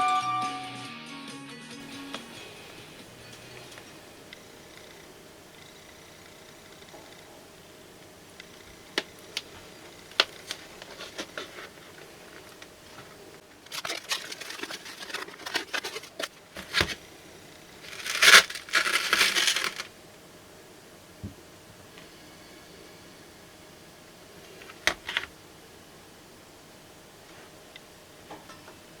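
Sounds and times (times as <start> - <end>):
plastic wrapping crinkling: 8.9 - 17.0, 17.7 - 19.9.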